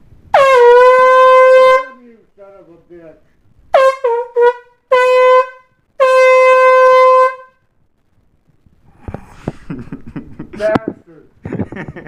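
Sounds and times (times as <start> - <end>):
air horn blasting: 0.3 - 2.0, 3.7 - 7.6.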